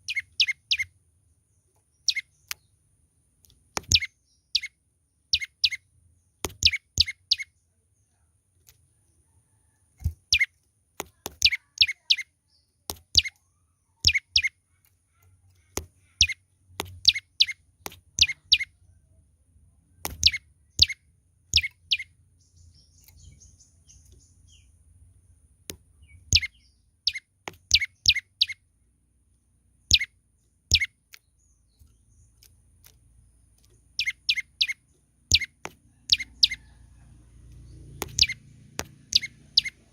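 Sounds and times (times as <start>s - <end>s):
bird chirping: 0.0s - 39.9s.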